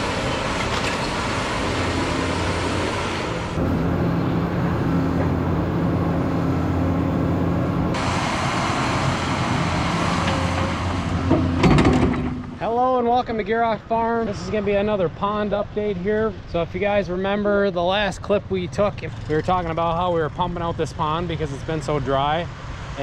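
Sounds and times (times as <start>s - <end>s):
excavator diesel engine running: 0.0s - 12.8s.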